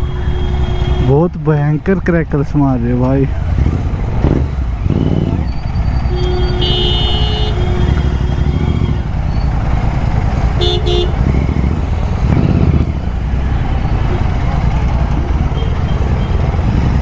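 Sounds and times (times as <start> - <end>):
vehicle horns honking: 0.0 - 1.3, 5.0 - 12.8, 13.4 - 17.0
motorcycle engine running: 2.8 - 17.0.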